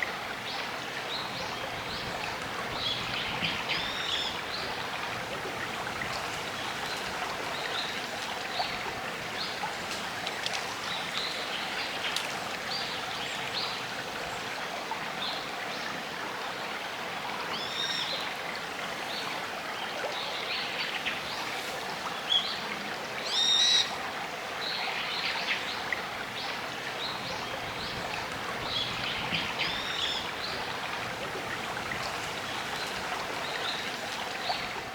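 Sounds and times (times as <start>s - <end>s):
river babbling over stones: 0.0s - 34.9s
birds calling: 1.2s - 14.5s, 27.0s - 34.9s.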